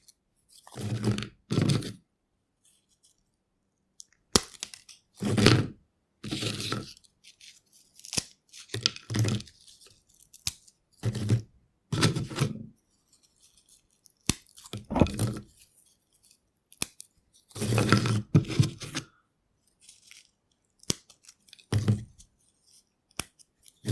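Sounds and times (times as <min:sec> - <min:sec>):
cheese crisps snapping and crunching: 0:04.0 - 0:05.0, 0:06.9 - 0:10.8, 0:13.4 - 0:15.5, 0:16.2 - 0:17.5, 0:19.8 - 0:21.7, 0:23.1 - 0:23.9.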